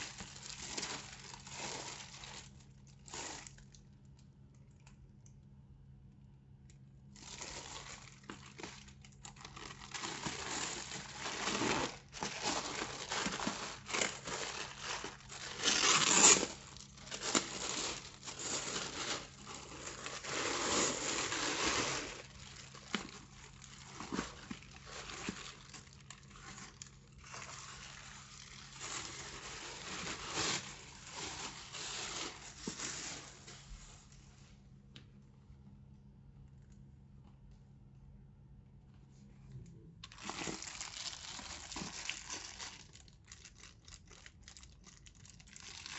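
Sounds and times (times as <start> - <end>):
packaging crinkling and rustling: 0.0 - 5.0, 7.1 - 34.2, 40.0 - 45.9.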